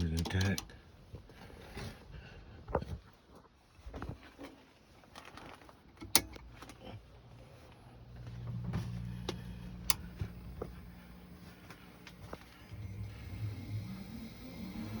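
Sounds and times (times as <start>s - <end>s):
motor electric hum: 6.1s - 15.0s.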